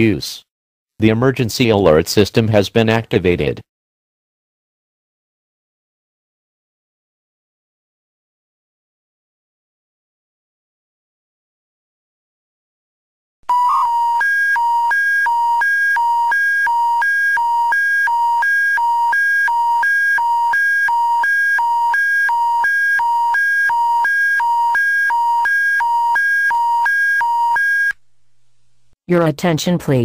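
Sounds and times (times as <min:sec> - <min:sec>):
electronic two-tone warble: 0:13.5 - 0:15.6.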